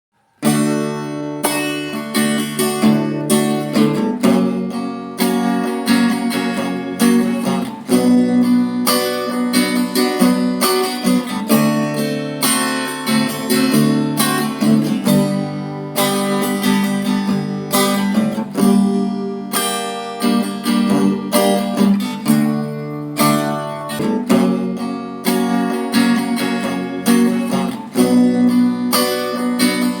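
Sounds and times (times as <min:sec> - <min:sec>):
acoustic guitar music: 0:00.2 - 0:30.0.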